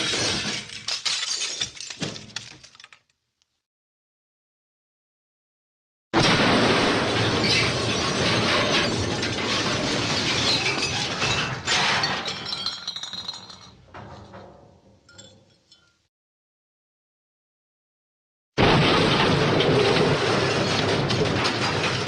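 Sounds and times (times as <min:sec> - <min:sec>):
crash of shattering glass: 0:00.0 - 0:03.0, 0:06.2 - 0:13.7, 0:18.6 - 0:22.0
clinks of falling pieces: 0:00.0 - 0:03.2, 0:07.5 - 0:14.4, 0:15.0 - 0:16.1.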